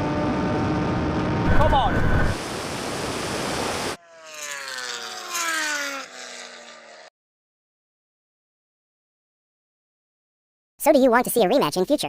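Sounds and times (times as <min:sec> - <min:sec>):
vehicle drone slowing: 0:00.0 - 0:07.1.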